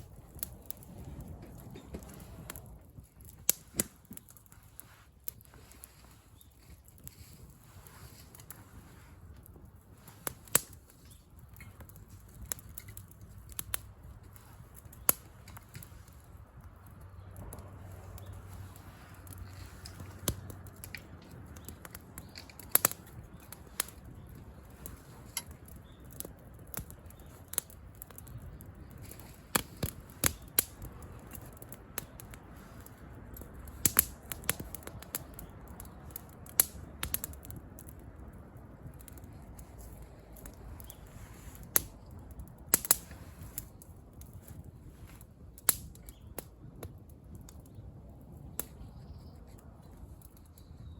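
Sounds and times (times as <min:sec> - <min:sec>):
campfire crackling: 0:00.0 - 0:50.9.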